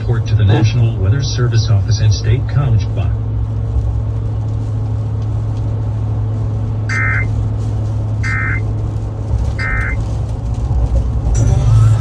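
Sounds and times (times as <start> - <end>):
low truck hum: 0.0 - 12.0
digital warble data bursts: 6.9 - 7.3, 8.2 - 8.6, 9.6 - 10.0.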